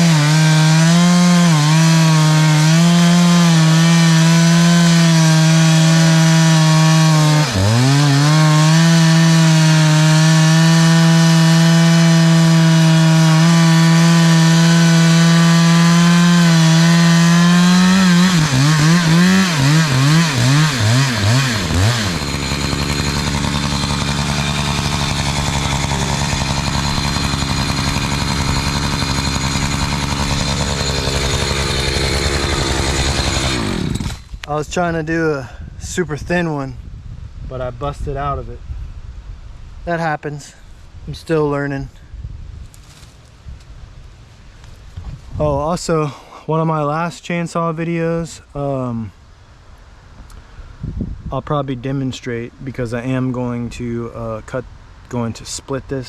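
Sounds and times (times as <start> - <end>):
chainsaw cutting through log: 0.0 - 34.5.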